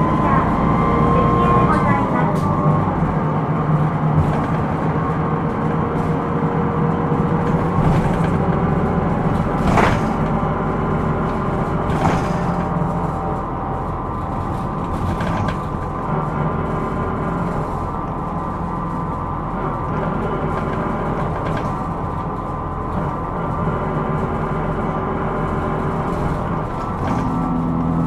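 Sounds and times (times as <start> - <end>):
bus engine and road noise: 0.0 - 28.0.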